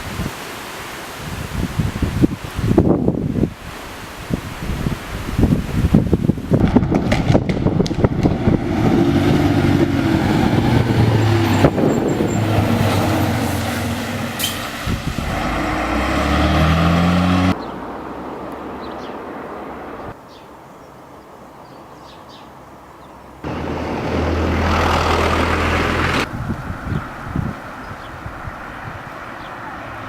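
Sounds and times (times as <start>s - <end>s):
outdoor noise: 0.0s - 30.0s
low engine hum: 6.6s - 20.2s, 23.4s - 27.6s
vehicle engine rising in pitch: 7.8s - 18.2s, 23.4s - 26.3s.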